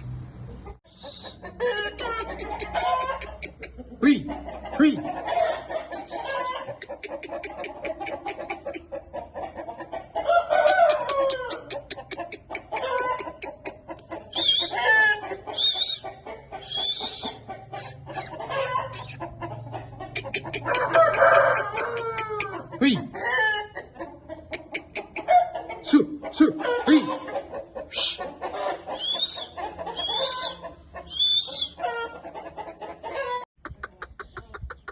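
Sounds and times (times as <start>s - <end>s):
chickens clucking and calling: 0.2s - 34.9s
high chirps: 15.5s - 19.2s, 28.9s - 31.8s.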